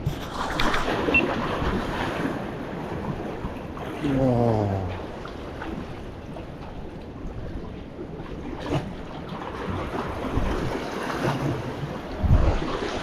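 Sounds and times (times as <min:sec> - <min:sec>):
waves washing against rock: 0:00.0 - 0:06.4, 0:08.4 - 0:13.0
wind buffeting microphone: 0:05.0 - 0:13.0.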